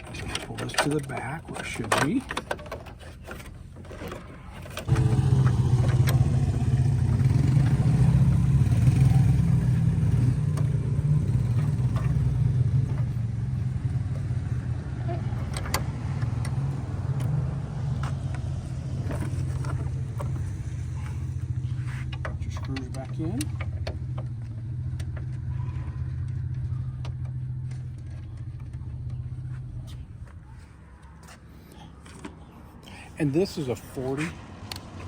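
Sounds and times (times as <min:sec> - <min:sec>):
vehicle engine humming: 0:00.0 - 0:35.0.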